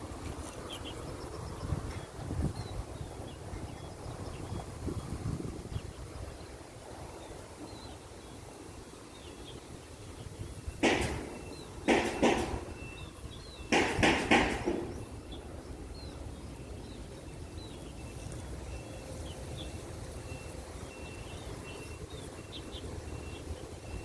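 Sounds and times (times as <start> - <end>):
low outdoor background noise: 0.0 - 24.0
small birds chirping: 0.2 - 6.6, 7.2 - 24.0
loud noisy bursts: 10.8 - 12.8, 13.7 - 15.1.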